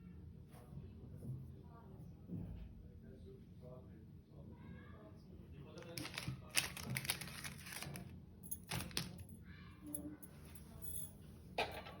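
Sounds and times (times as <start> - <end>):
chocolate wrappers crackling: 5.8 - 9.2.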